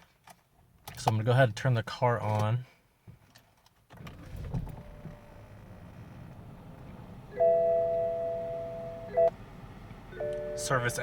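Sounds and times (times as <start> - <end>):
car engine idling: 4.1 - 11.0
dashboard warning chime: 7.2 - 9.4, 10.0 - 11.0.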